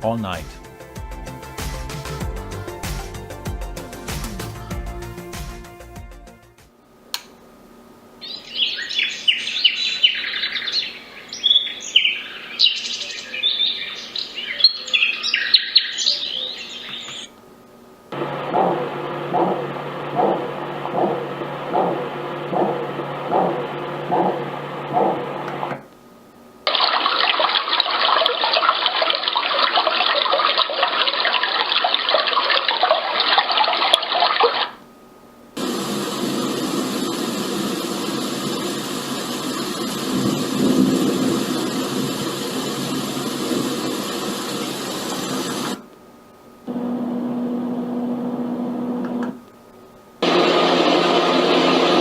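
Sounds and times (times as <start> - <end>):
white noise machine: 6.7 - 26.8, 34.8 - 52.0.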